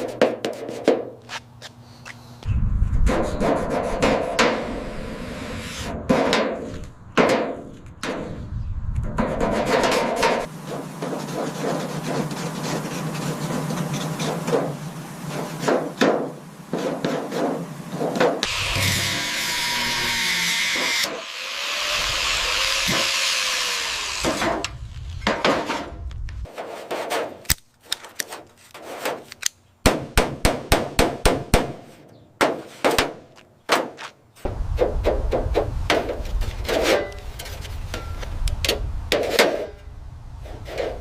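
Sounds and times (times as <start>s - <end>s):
power tool hissing grind: 18.4s - 24.6s
hammer strikes on metal: 29.9s - 31.8s.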